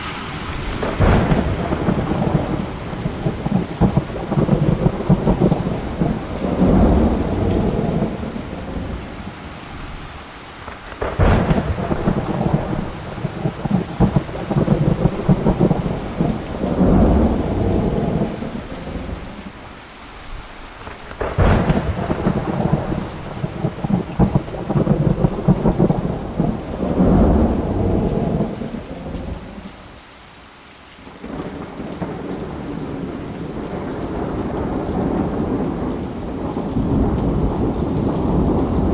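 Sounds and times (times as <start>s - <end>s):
heavy rain: 0.0s - 38.9s
rolling thunder: 0.1s - 9.8s, 10.7s - 19.6s, 20.8s - 29.8s, 31.2s - 38.9s
sharp thunder cracks: 0.4s - 9.4s, 10.7s - 19.4s, 20.8s - 29.5s.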